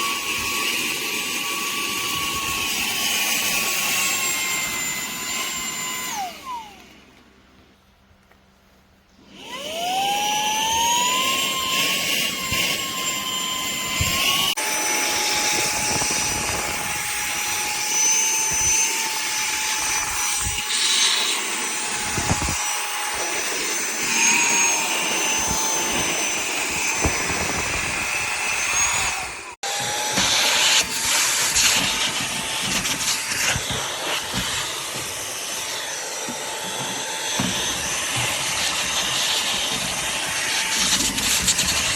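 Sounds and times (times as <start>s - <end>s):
handheld vacuum motor whining: 0.0s - 7.3s, 9.2s - 41.9s.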